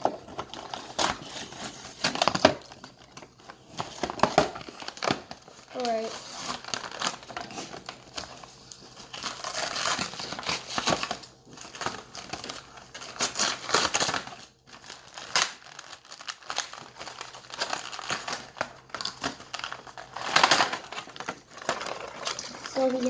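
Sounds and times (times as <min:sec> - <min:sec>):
plastic packaging crinkling: 0:00.0 - 0:23.0.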